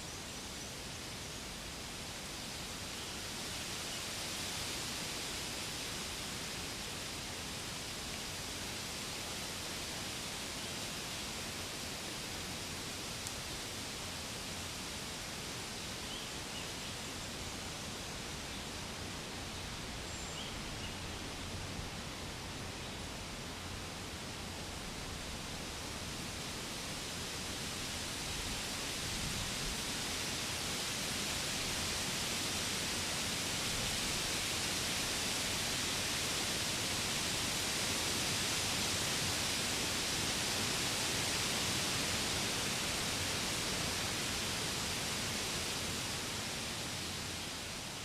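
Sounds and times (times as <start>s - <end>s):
wind rushing through trees: 0.0s - 48.0s.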